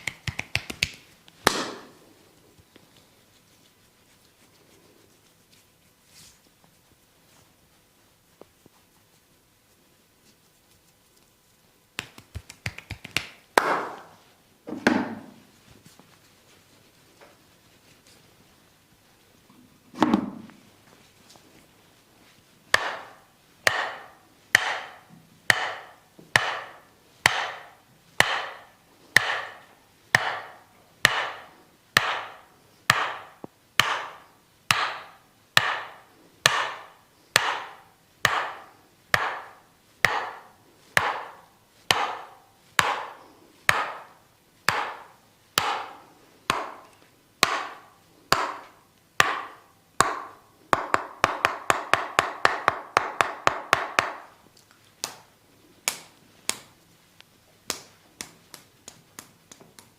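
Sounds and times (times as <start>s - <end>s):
massage hammer knocking: 0.0s - 2.0s, 12.0s - 14.1s, 22.7s - 54.4s.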